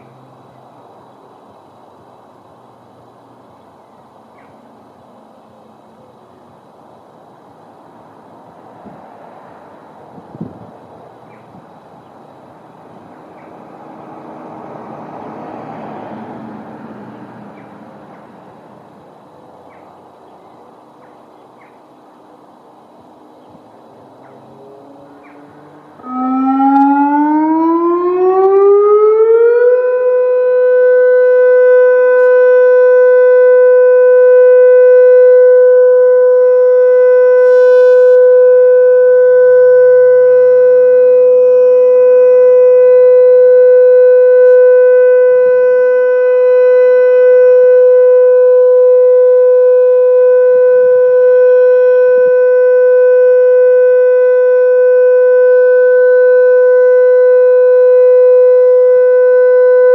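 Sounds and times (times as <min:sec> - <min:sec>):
siren steady tone: 0:24.5 - 0:59.9.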